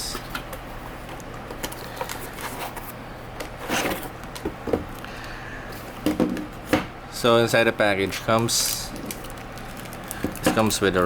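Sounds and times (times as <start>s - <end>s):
packaging rustling: 8.3s - 11.0s
packaging clicks and knocks: 8.9s - 10.8s.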